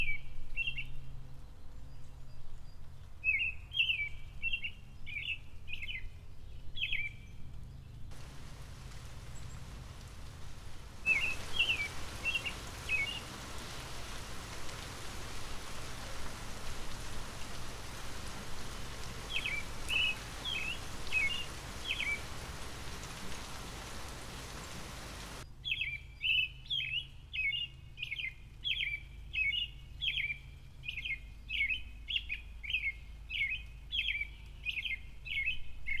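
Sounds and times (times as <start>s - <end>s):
light rain hissing: 8.1s - 25.4s
bird chirping: 8.1s - 25.8s.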